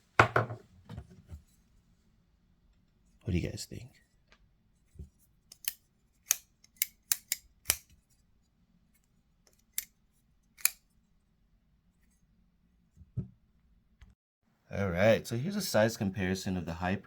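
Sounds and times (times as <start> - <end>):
folding knife metallic clicks: 5.5 - 7.9, 10.6 - 10.8.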